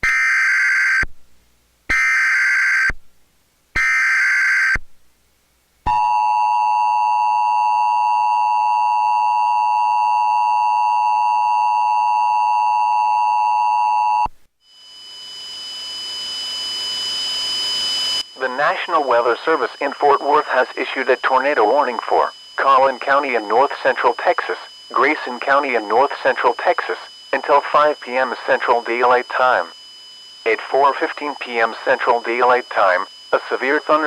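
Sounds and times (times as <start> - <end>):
static hiss with faint tones: 1.1 - 1.9, 2.9 - 3.8, 4.8 - 5.9, 14.3 - 34.0
electronic data bursts: 14.8 - 34.0.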